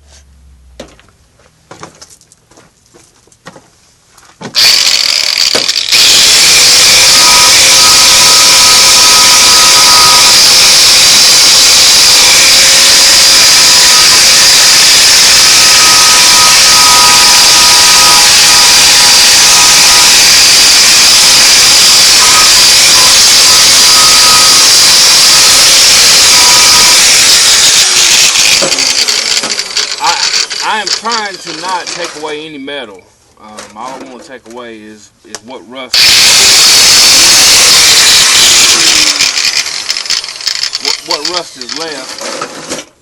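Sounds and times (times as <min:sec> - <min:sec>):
power tool running loud: 0:04.6 - 0:32.1, 0:36.0 - 0:42.3.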